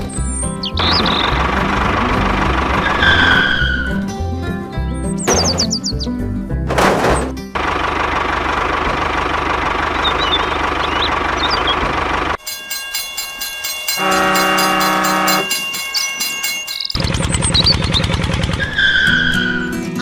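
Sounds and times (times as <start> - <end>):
train rumbling: 0.0 - 4.2, 6.6 - 19.5
fast regular pulsing: 0.7 - 3.0
train horn: 14.0 - 15.6.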